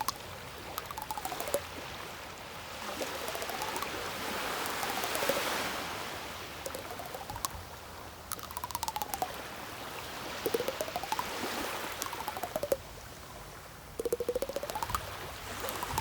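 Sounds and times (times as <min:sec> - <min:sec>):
rapid clicks: 0:00.0 - 0:00.2, 0:00.8 - 0:01.7, 0:02.9 - 0:05.6, 0:06.6 - 0:07.6, 0:08.3 - 0:09.4, 0:10.4 - 0:12.8, 0:14.0 - 0:16.0
faint gliding tones: 0:00.8 - 0:01.7, 0:02.9 - 0:05.8, 0:06.5 - 0:09.6, 0:10.3 - 0:13.0, 0:14.0 - 0:16.0.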